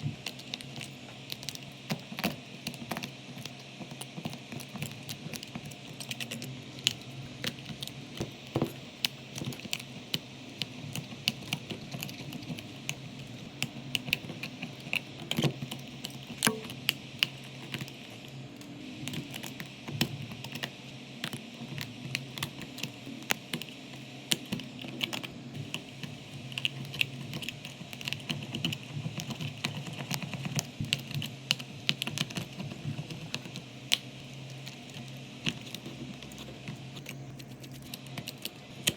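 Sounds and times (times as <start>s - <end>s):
low steady hum: 0.0s - 38.9s
small tools clicking on phone parts: 0.2s - 18.2s, 19.0s - 38.9s.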